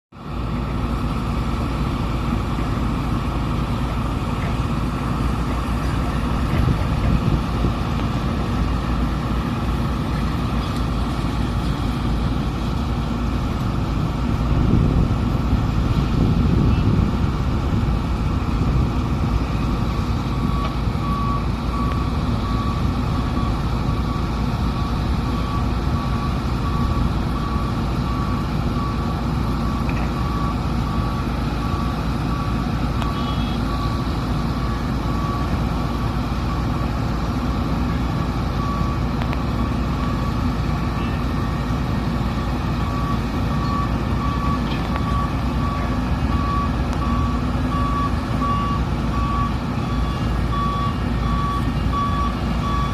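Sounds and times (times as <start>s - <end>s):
heavy diesel engines running: 0.1s - 52.9s
back-up alarm beeping: 19.5s - 36.7s, 42.3s - 52.9s.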